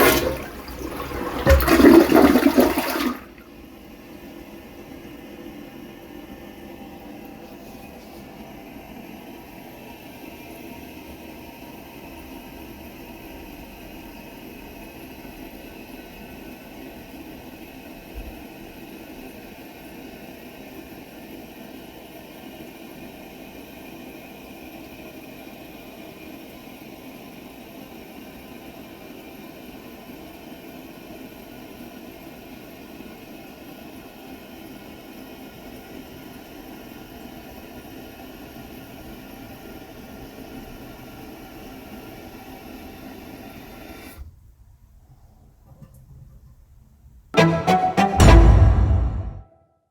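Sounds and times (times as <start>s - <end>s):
water rushing through fill valve: 0.0s - 3.4s.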